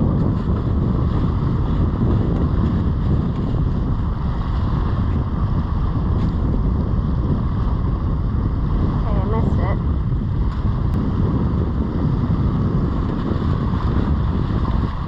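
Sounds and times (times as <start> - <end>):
ocean surf: 0.0 - 15.0
wind on microphone: 0.0 - 15.0.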